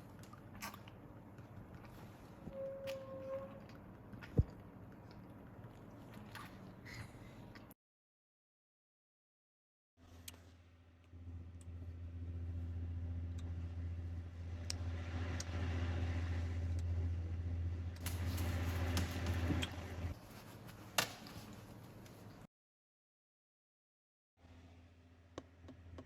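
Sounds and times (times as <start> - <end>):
low mechanical hum: 0.0 - 7.7, 10.0 - 22.5.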